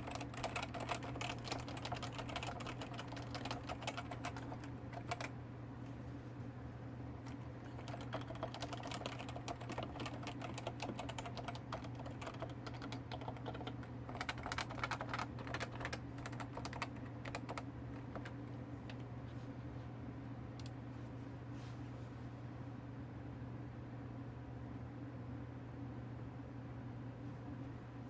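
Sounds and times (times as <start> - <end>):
soft keyboard keystrokes: 0.0 - 5.3, 7.2 - 19.1.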